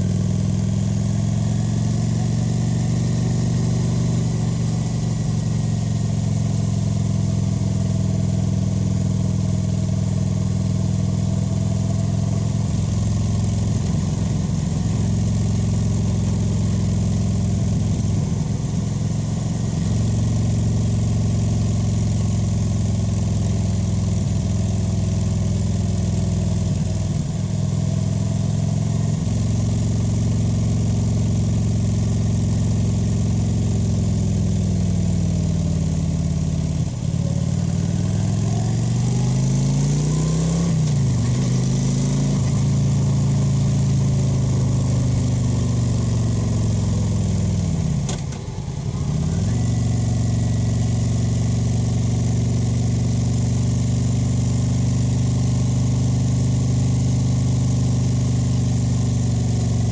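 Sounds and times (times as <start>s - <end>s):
motorcycle engine cruising: 25.7s - 59.9s.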